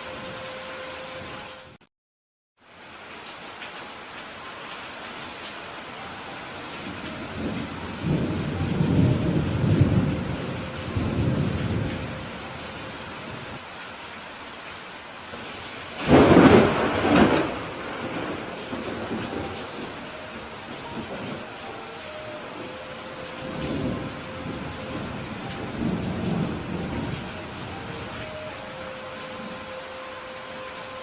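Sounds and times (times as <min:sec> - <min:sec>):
steady rain: 0:00.0 - 0:01.8, 0:02.6 - 0:31.0
thunder rumbling: 0:06.8 - 0:13.6, 0:15.3 - 0:29.8
thunderclap: 0:16.0 - 0:20.0.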